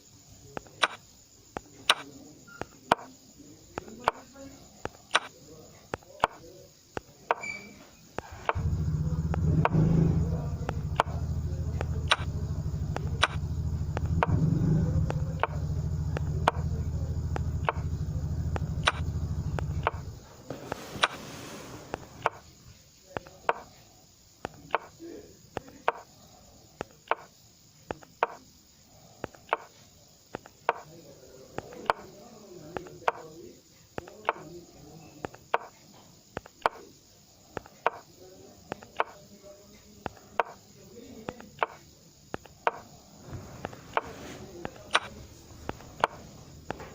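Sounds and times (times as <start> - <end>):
sharp clicks: 0.6 - 1.0, 1.6 - 3.1, 3.7 - 7.6, 8.2 - 20.2, 21.0 - 21.2, 21.9 - 22.5, 23.2 - 23.8, 24.4 - 25.0, 25.6 - 26.1, 26.8 - 27.3, 27.9 - 28.4, 29.2 - 29.7, 30.3 - 30.9, 31.6 - 32.1, 32.8 - 33.3, 34.0 - 34.5, 35.2 - 35.8, 37.6 - 38.1, 38.7 - 39.2, 40.1 - 40.6, 41.3 - 42.9, 43.6 - 46.9
steady low hum: 8.3 - 22.6.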